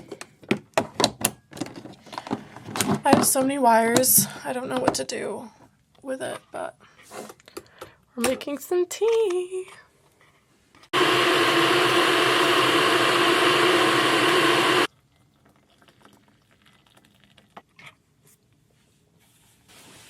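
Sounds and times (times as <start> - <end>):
water rushing with hum: 11.0 - 14.9.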